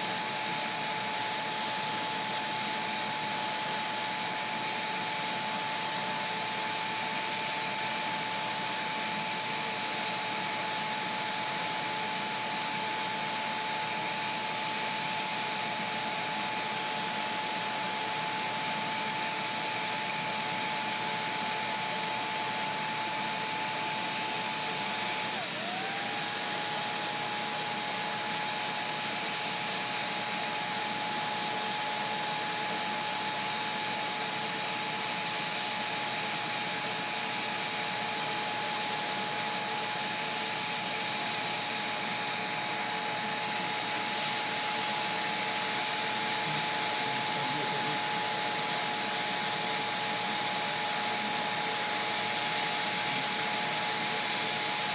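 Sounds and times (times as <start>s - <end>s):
heat gun blowing air: 0.0s - 54.9s.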